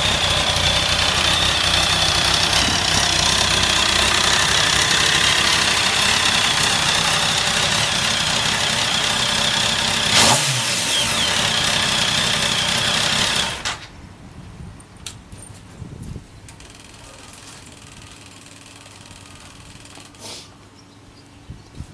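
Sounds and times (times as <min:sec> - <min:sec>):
motorcycle engine idling: 0:00.0 - 0:13.7, 0:16.6 - 0:20.2
hiss: 0:20.2 - 0:20.5.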